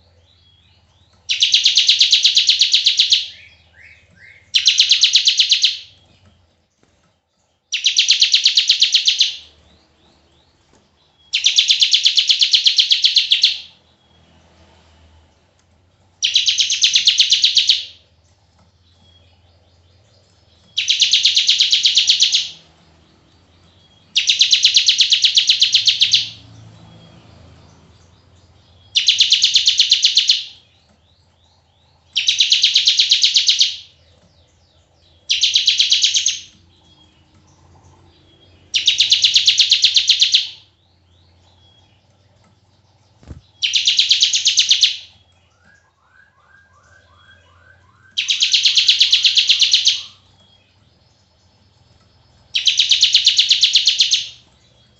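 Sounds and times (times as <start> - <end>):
bird buzzy rattling trill: 0.0 - 14.6, 15.2 - 45.9, 46.6 - 54.9.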